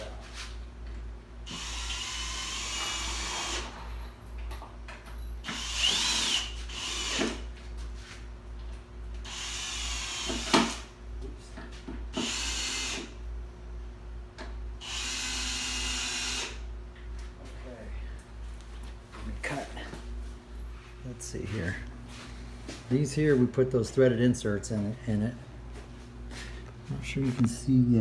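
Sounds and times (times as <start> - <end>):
power drill bursts: 1.5 - 3.8, 5.4 - 7.4, 9.2 - 10.9, 12.1 - 13.1, 14.8 - 16.6.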